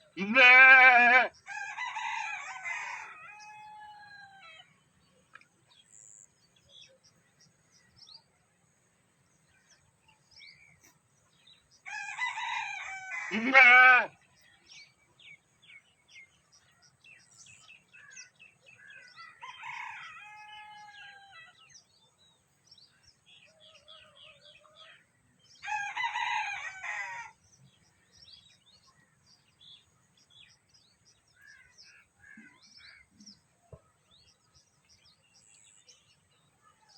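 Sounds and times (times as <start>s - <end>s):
farm animal calls: 0.0s - 4.8s, 11.9s - 14.4s
small birds chirping: 3.3s - 12.5s, 13.7s - 36.9s.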